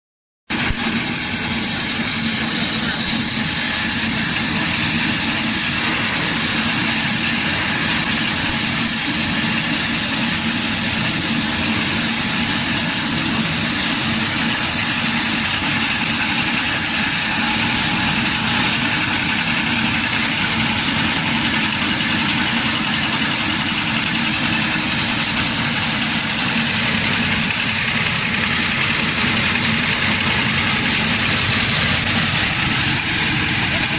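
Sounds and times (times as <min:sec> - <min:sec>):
grinder machine running: 0:00.5 - 0:33.9.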